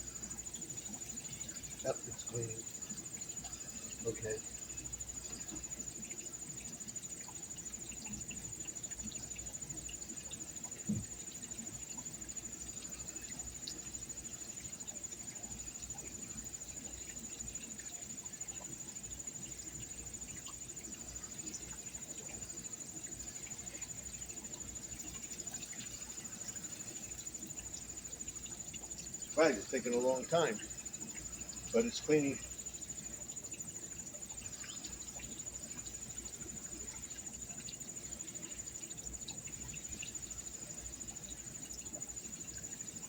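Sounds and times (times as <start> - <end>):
crickets trilling: 0.0 - 43.0.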